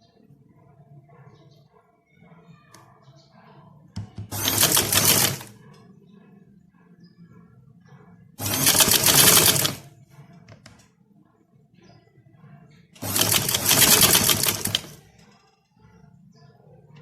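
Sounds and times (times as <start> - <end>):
sewing machine needle clatter: 4.2 - 5.5, 8.4 - 9.8, 13.0 - 15.0.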